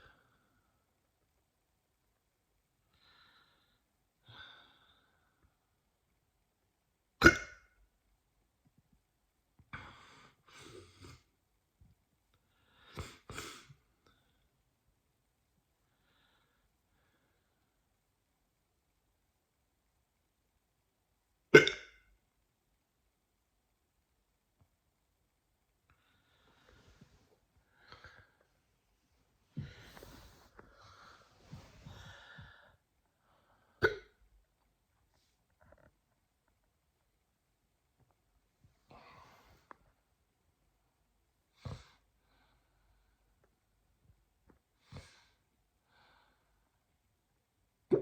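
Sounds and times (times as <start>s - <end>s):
person hiccuping: 7.2s - 7.7s, 21.6s - 22.0s, 33.8s - 34.1s.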